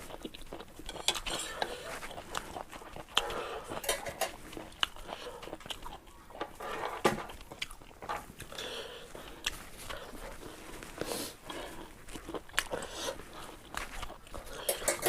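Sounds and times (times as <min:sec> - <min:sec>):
mouth sounds of eating: 0:00.0 - 0:15.0
utensil clinking against bowl: 0:14.7 - 0:15.0.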